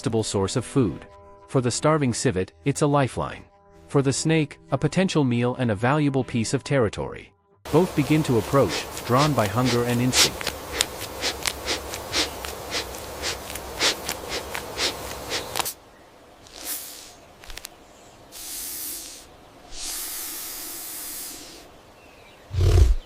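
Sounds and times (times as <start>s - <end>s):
dry leaves crackling and rustling: 7.7s - 15.8s
snake hissing: 7.7s - 15.8s, 16.4s - 21.8s, 22.5s - 23.0s.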